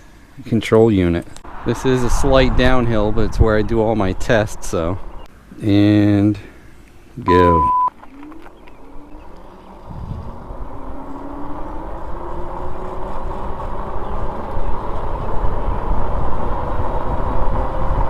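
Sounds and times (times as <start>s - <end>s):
wind: 0.0s - 18.0s
electric bike motor whine: 8.0s - 18.0s
tyre rumble: 9.9s - 10.8s.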